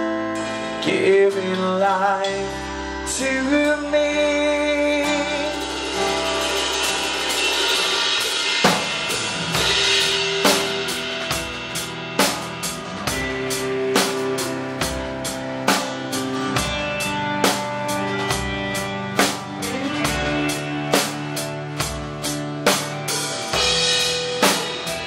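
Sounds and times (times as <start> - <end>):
rock band playing live: 0.0 - 25.0
cymbals: 5.0 - 25.0
drum kit kick and snare: 5.6 - 25.0.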